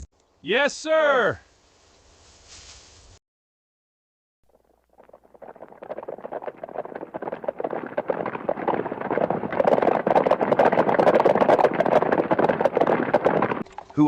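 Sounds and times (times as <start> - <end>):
horses hooves clip-clopping: 4.5 - 14.0.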